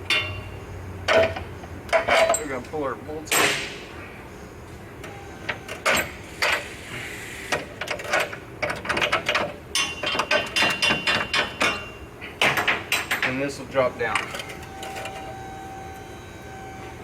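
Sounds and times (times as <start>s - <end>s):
metal clinks and knocks: 1.1s - 2.6s, 8.0s - 13.4s.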